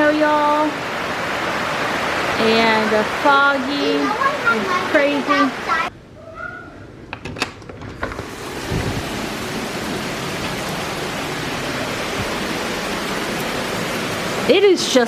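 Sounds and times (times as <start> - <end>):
heavy rain pouring: 8.4 - 14.6.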